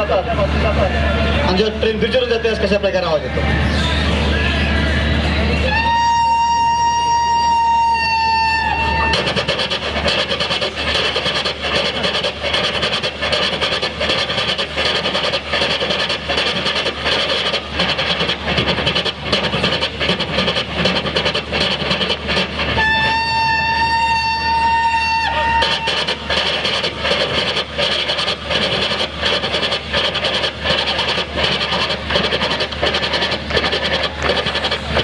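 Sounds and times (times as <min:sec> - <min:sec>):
man imitating train whistle: 0:05.7 - 0:09.3, 0:22.8 - 0:26.0
mouth imitating wheels clacking: 0:09.0 - 0:23.5, 0:24.6 - 0:35.0.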